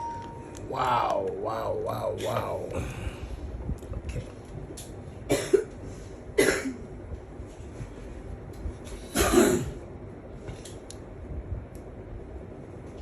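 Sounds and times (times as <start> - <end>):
low room hum: 0.0 - 13.0
person coughing: 5.3 - 5.7, 6.4 - 6.8, 9.1 - 9.8.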